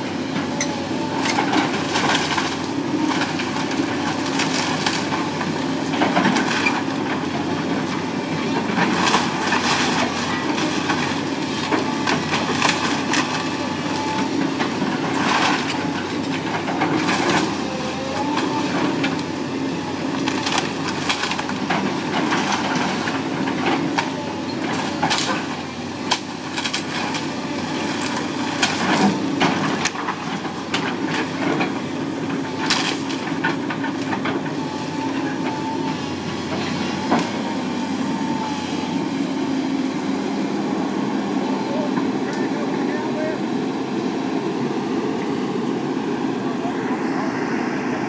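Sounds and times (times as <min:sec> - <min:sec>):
heavy machine engine running: 0:00.0 - 0:48.0
wood cracking and snapping: 0:24.7 - 0:27.2, 0:32.6 - 0:33.6.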